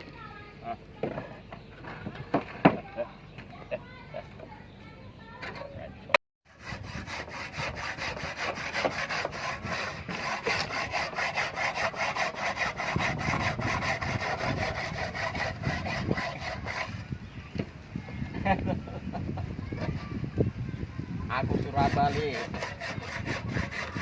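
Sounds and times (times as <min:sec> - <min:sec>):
saw cutting brick: 0:06.5 - 0:17.0, 0:21.5 - 0:24.0.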